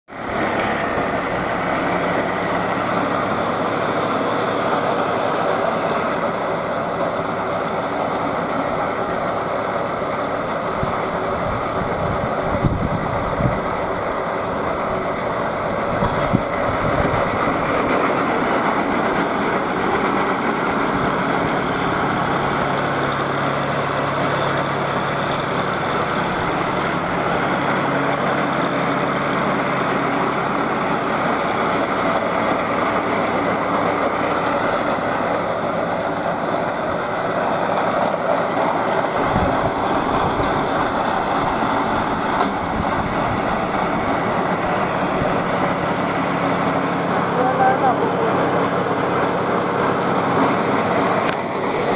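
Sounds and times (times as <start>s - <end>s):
baler machinery working: 0.1s - 51.9s
tractor diesel engine running: 0.1s - 51.9s.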